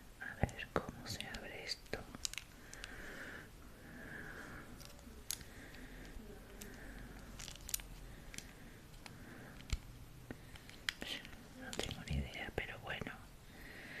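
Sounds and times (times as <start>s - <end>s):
container clicks and rustling: 6.5s - 9.8s.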